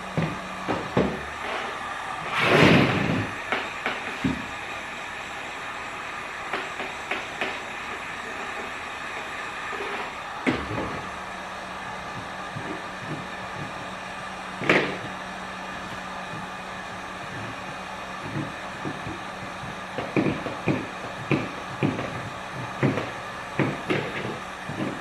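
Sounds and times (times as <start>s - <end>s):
heat gun blowing: 0.0s - 25.0s
knocks: 18.2s - 25.0s.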